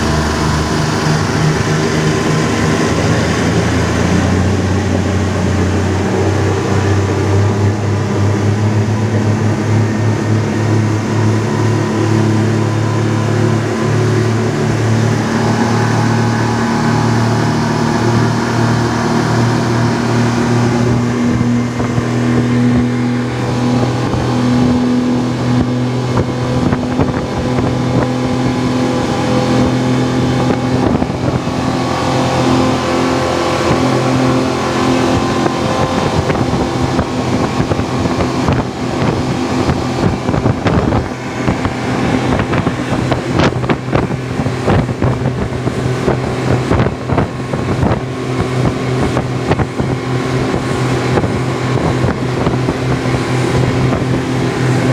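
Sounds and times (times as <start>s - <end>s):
motorboat engine: 0.0s - 54.9s
rushing water: 0.0s - 54.9s
wind: 0.0s - 54.9s.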